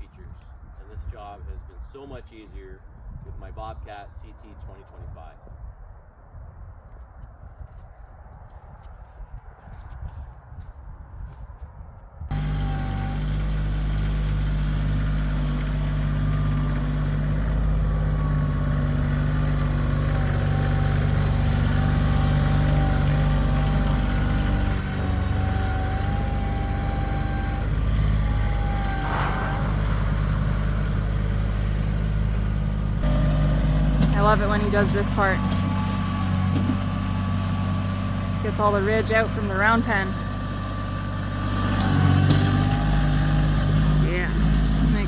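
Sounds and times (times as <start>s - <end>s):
diesel tractor engine running: 12.3s - 45.0s.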